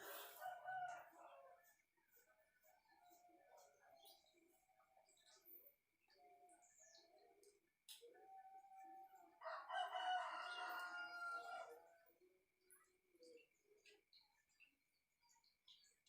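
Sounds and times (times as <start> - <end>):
rooster crowing: 0.0 - 1.6, 9.4 - 11.9.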